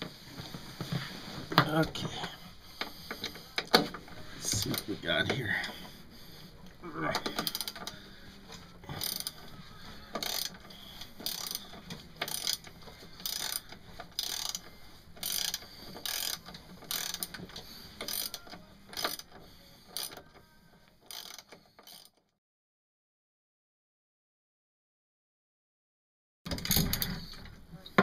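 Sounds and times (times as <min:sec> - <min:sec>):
mechanical clicking strokes: 0:09.0 - 0:09.5, 0:10.1 - 0:20.4, 0:21.0 - 0:22.2.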